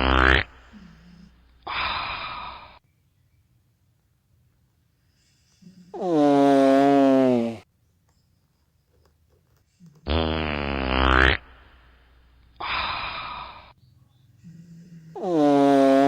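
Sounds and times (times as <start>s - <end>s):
buzzing farts: 0.0s - 1.3s, 5.9s - 7.6s, 10.0s - 11.9s, 15.2s - 16.0s
hissing fart: 0.0s - 2.8s, 5.6s - 7.6s, 9.8s - 11.8s, 15.2s - 16.0s.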